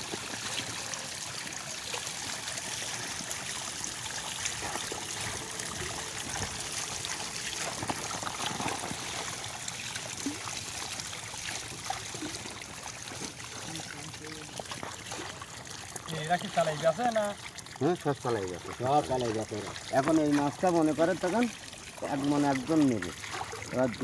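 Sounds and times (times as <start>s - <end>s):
water trickling and splashing: 0.0s - 24.0s.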